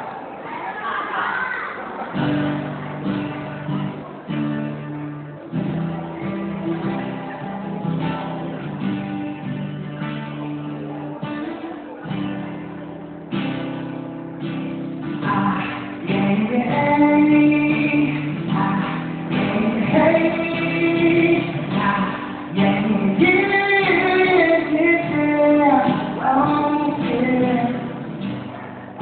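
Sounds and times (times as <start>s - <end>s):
guitar strumming chords: 2.1s - 29.0s.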